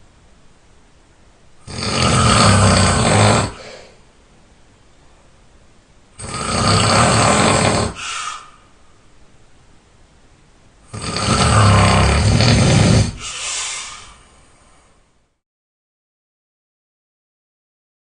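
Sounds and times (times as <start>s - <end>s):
person snoring: 1.6s - 4.0s, 6.2s - 8.5s, 10.9s - 14.2s
soft breath: 3.2s - 4.1s, 7.3s - 9.0s, 12.0s - 15.2s.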